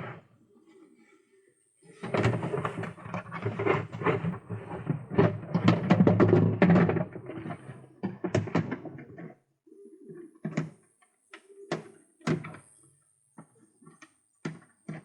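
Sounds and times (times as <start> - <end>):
pigeons cooing: 0.0 - 3.5, 6.9 - 14.1.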